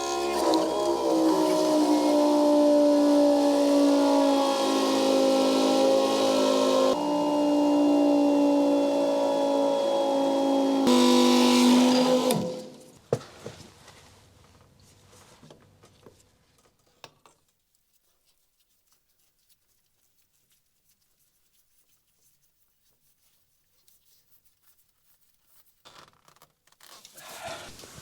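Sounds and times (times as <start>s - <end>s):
machine whining: 0.0s - 12.9s.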